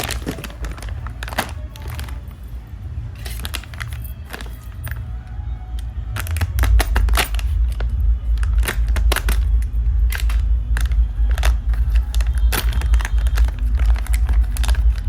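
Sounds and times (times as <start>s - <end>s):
crackling crinkling handling: 0.0s - 5.1s, 5.7s - 15.0s
low rumble: 0.0s - 15.0s.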